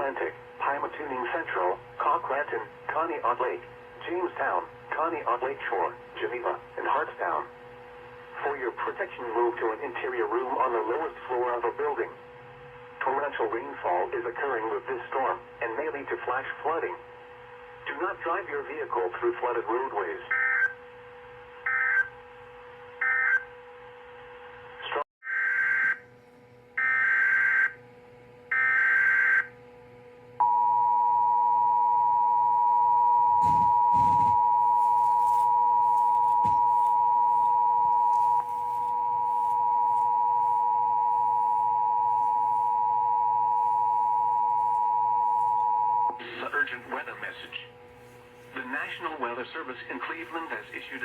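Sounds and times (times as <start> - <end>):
two-tone attention signal: 30.4 - 46.2.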